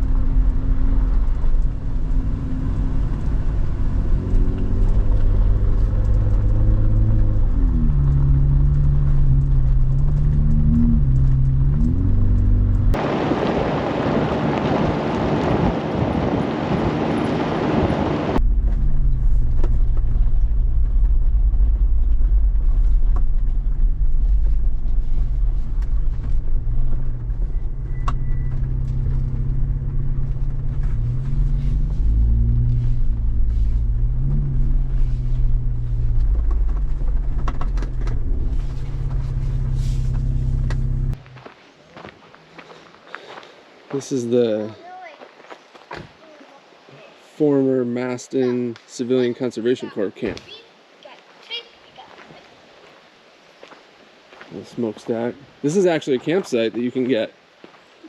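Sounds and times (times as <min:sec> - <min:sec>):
car engine running: 0:00.0 - 0:13.4, 0:14.2 - 0:41.4.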